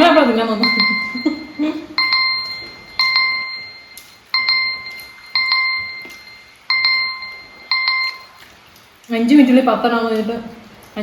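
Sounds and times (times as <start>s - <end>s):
timer chime dinging: 0.0s - 8.5s.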